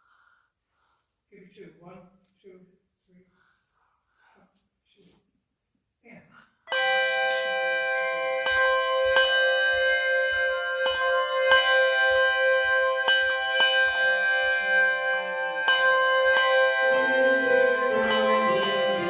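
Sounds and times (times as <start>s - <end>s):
handbells playing a tune: 6.7s - 19.0s.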